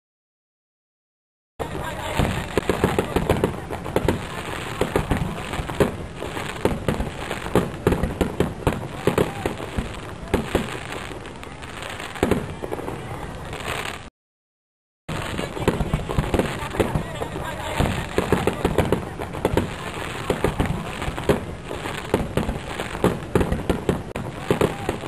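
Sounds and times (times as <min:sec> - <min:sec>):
fireworks bangs and crackling: 0:01.6 - 0:14.1, 0:15.1 - 0:25.0.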